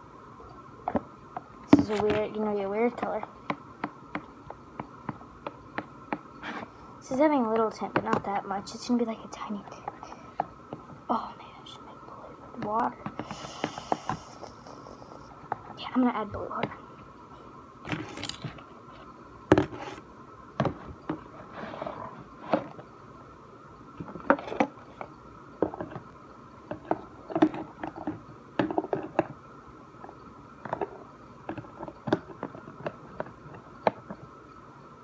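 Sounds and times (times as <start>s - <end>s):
faint steady hum: 0.0s - 35.0s
objects clicking and knocking: 30.0s - 34.3s.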